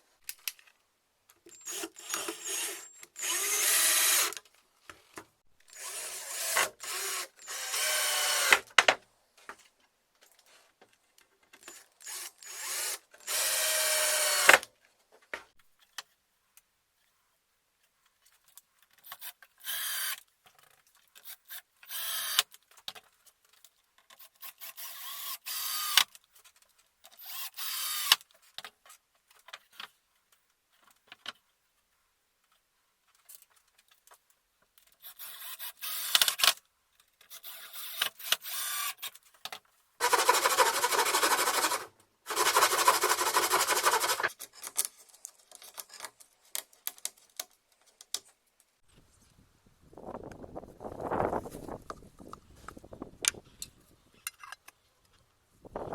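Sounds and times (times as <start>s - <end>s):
woodworking noises: 1.4s - 15.6s, 37.2s - 49.1s
small power tool running: 1.6s - 4.4s, 5.7s - 8.6s, 12.0s - 14.6s, 40.0s - 44.2s.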